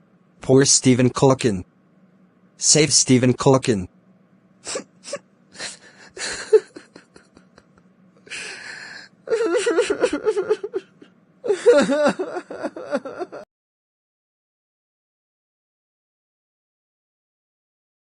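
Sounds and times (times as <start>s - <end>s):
person crying and sobbing: 4.6s - 13.5s.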